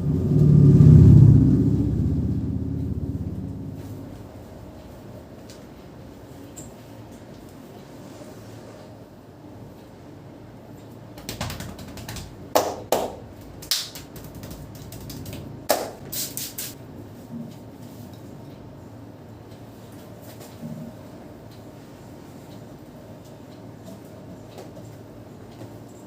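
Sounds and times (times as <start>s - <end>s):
hands clicking and slapping on head: 11.2s - 16.7s.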